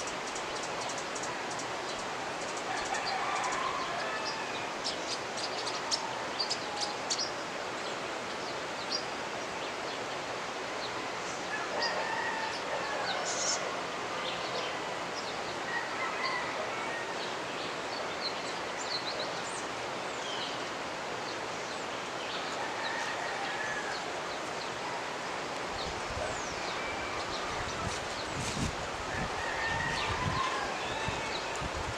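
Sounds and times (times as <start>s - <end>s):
river water rushing: 0.0s - 31.9s
rooster crowing: 2.7s - 4.7s, 11.5s - 13.6s, 15.7s - 17.4s, 22.5s - 24.2s, 26.4s - 28.0s, 29.0s - 31.8s.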